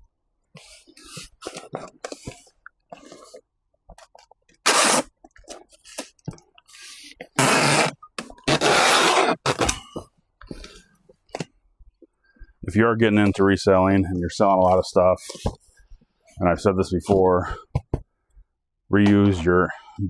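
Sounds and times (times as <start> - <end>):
packing tape pulled from tape gun: 4.7 - 5.1, 7.4 - 9.8.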